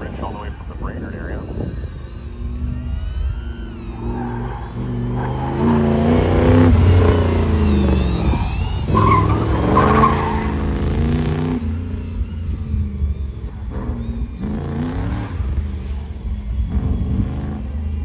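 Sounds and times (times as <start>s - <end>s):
car engine revving: 0.0s - 18.0s
tyres squealing: 3.3s - 11.8s.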